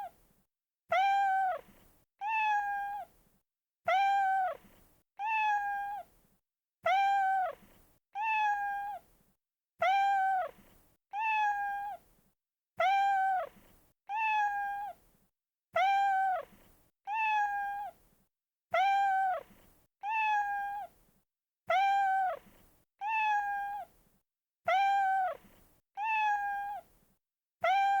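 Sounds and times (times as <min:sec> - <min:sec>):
cat meowing: 0:00.9 - 0:01.6, 0:02.2 - 0:03.1, 0:03.9 - 0:04.6, 0:05.2 - 0:06.1, 0:06.9 - 0:07.6, 0:08.2 - 0:09.0, 0:09.8 - 0:10.5, 0:11.2 - 0:12.0, 0:12.8 - 0:13.5, 0:14.1 - 0:15.0, 0:15.8 - 0:16.4, 0:17.1 - 0:18.0, 0:18.7 - 0:19.4, 0:20.0 - 0:20.9, 0:21.7 - 0:22.4, 0:23.0 - 0:23.9, 0:24.7 - 0:25.4, 0:26.0 - 0:26.9, 0:27.6 - 0:28.0.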